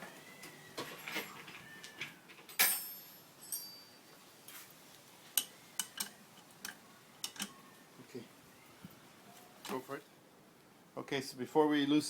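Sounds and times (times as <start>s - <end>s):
metallic clink: 2.5s - 4.0s.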